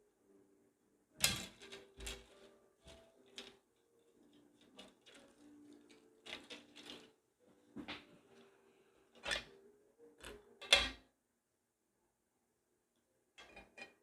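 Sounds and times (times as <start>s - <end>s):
plastic parts clicking and knocking: 1.2s - 7.2s, 10.2s - 11.0s.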